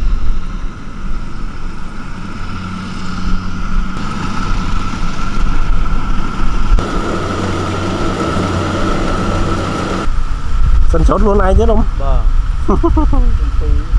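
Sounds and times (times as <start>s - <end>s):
diesel engine running: 1.3s - 10.1s
high machine whine: 3.4s - 10.2s.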